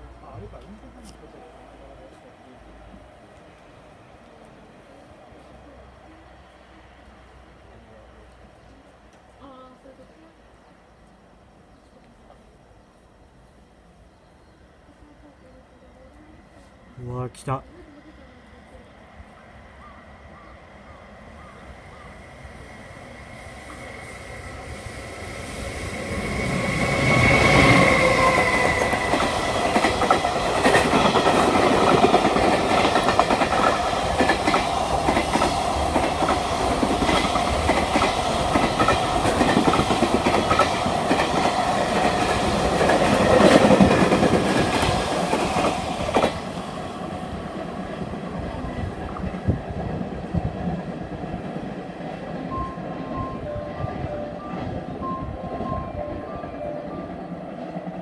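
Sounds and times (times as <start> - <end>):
freight train passing: 0.0 - 58.0
train wheels clattering over rail joints: 26.5 - 46.5.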